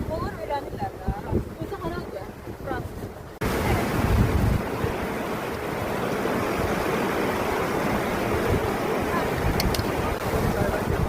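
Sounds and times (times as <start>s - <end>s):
wind buffeting microphone: 0.0s - 11.0s
waterfall roaring: 3.4s - 11.0s.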